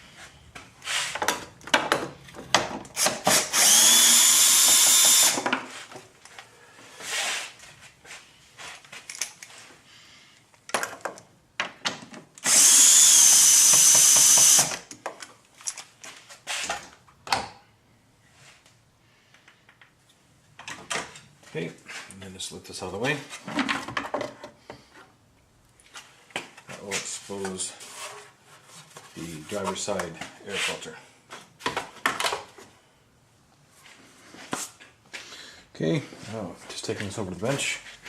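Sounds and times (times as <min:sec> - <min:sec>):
power drill whine: 0:03.0 - 0:05.4, 0:12.4 - 0:14.8.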